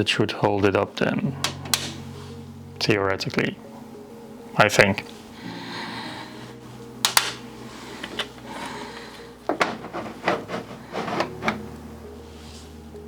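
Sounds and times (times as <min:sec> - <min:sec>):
plastic clicks and clacks: 0:07.1 - 0:07.4.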